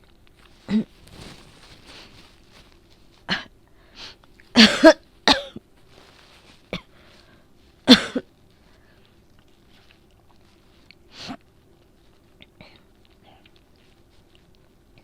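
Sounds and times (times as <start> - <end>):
woman coughing: 0.7 - 1.0, 3.3 - 3.5, 4.5 - 5.6, 6.7 - 6.9, 7.9 - 8.3.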